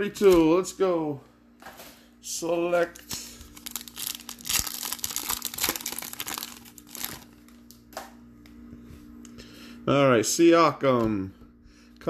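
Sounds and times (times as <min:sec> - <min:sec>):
plastic packaging crinkling: 0:02.8 - 0:07.9.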